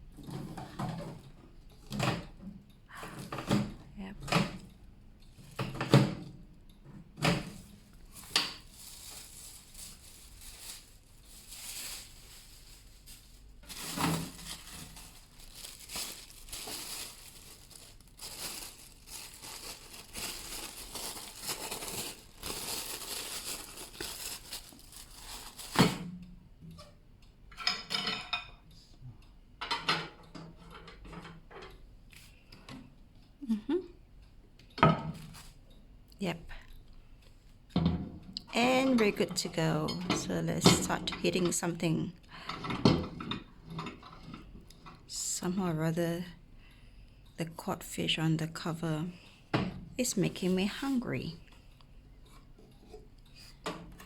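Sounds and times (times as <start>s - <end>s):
plastic rustling and crinkling: 7.3s - 26.2s.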